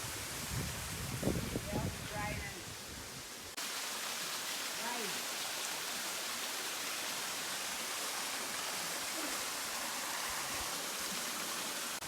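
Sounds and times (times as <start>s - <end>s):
waterfall rushing: 3.6s - 12.0s.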